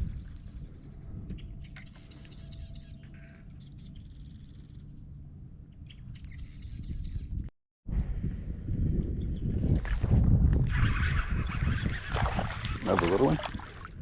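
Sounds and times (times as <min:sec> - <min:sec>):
low steady rumble: 0:00.0 - 0:09.4
birds trilling: 0:10.7 - 0:13.4.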